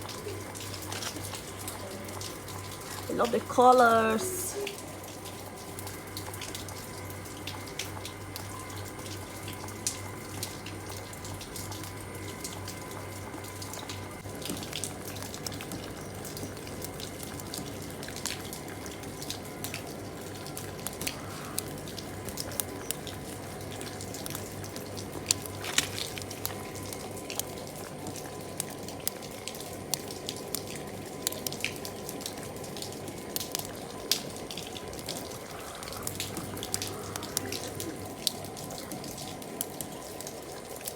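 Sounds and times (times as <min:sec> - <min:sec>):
close water drips: 0:00.0 - 0:40.9
steady rain falling: 0:00.0 - 0:40.9.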